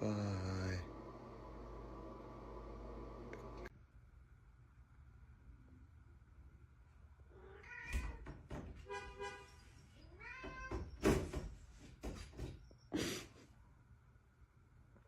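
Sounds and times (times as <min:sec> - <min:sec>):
cat meowing: 0:07.3 - 0:08.3, 0:10.0 - 0:11.0.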